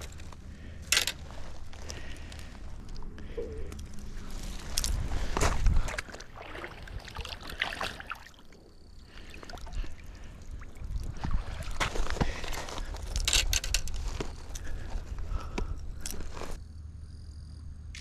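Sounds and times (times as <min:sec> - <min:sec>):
steady low rumble: 0:00.0 - 0:07.3
water lapping and sloshing: 0:00.0 - 0:15.4.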